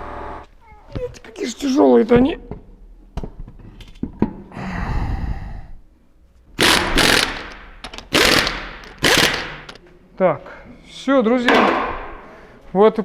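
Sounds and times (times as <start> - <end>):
impact wrench rattling: 6.6 - 9.8.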